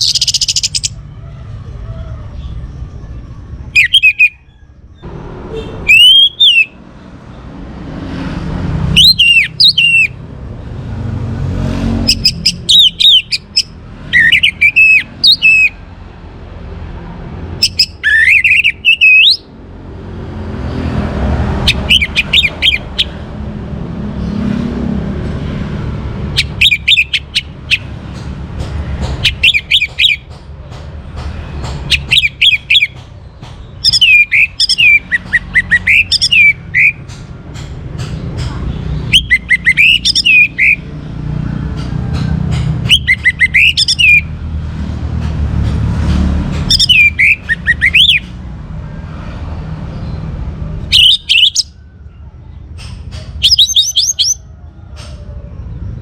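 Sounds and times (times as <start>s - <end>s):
thrush whistling song: 0.0s - 1.0s, 3.6s - 4.8s, 5.6s - 6.8s, 8.9s - 10.2s, 12.0s - 15.8s, 17.6s - 19.5s, 21.6s - 23.2s, 26.4s - 27.9s, 29.2s - 30.3s, 31.9s - 33.0s, 33.7s - 37.1s, 39.0s - 40.9s, 42.9s - 44.3s, 46.7s - 48.3s, 50.9s - 51.8s, 53.4s - 54.5s.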